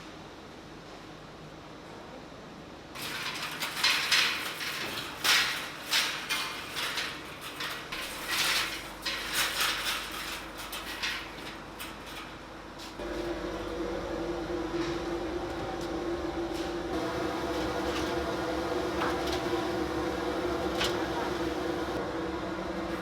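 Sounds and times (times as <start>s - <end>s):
mechanical clattering and scraping: 3.0s - 13.0s, 16.6s - 22.0s.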